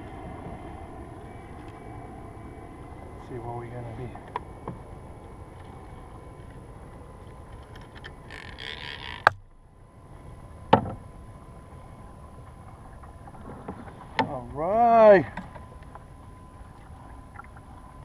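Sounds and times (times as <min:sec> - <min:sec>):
water and wind wash: 0:00.0 - 0:18.0.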